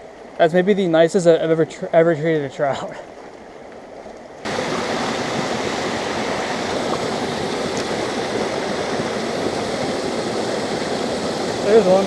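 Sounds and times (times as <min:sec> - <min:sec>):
stream rushing over rocks: 0:04.4 - 0:12.0.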